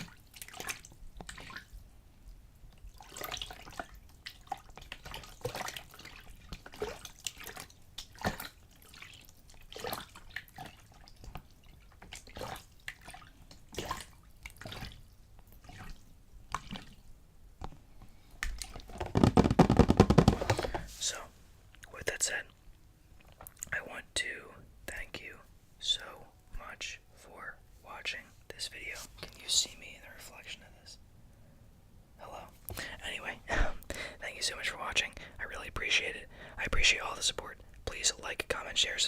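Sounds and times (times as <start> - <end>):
water dripping: 0.0 - 1.8, 2.6 - 17.1
water sloshing in a container: 0.0 - 1.9, 2.6 - 17.2, 18.1 - 19.3.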